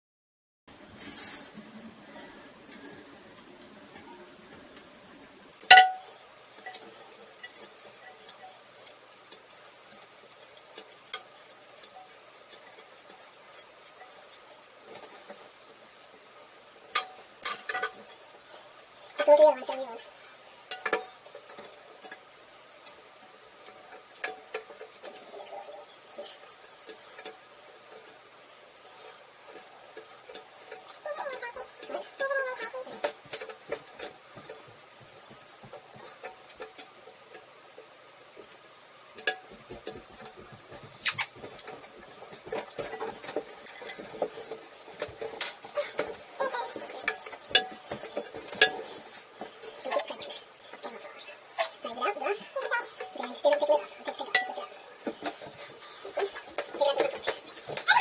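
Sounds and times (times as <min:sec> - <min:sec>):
hard objects clicking and knocking: 0:05.6 - 0:08.5, 0:32.8 - 0:51.5
tools and parts clinking: 0:05.7 - 0:08.5, 0:16.5 - 0:18.1, 0:39.2 - 0:50.0.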